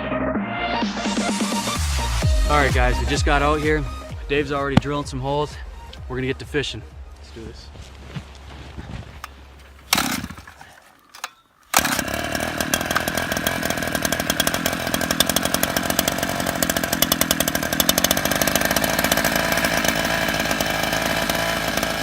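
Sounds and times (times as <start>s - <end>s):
ice auger engine buzzing: 9.2s - 22.0s.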